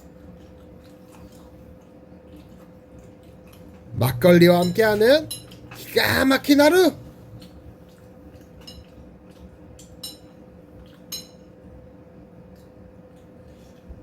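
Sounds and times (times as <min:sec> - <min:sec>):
faint steady hum: 0:00.0 - 0:14.0
utensils clinking against dishes: 0:04.2 - 0:06.0, 0:08.6 - 0:09.0, 0:09.9 - 0:10.4, 0:11.1 - 0:11.5.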